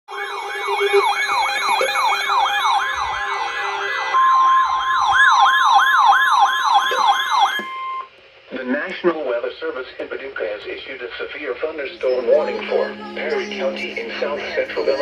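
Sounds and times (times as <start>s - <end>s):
electronic siren yelping: 0.1s - 8.1s
steady high alarm tone: 0.1s - 8.1s, 12.0s - 15.0s.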